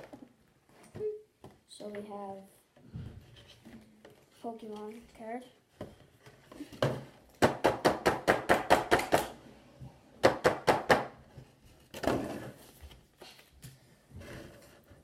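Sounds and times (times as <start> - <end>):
rustling scrape: 11.7 - 15.0.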